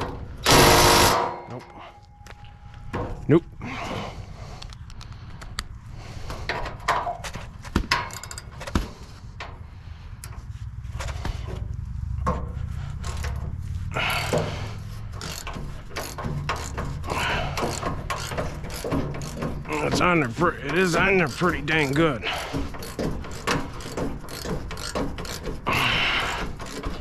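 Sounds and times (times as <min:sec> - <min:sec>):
short rasping bursts: 0:00.4 - 0:01.3, 0:14.0 - 0:27.0
steady low hum: 0:07.5 - 0:27.0
tools knocking on metal: 0:15.2 - 0:25.7.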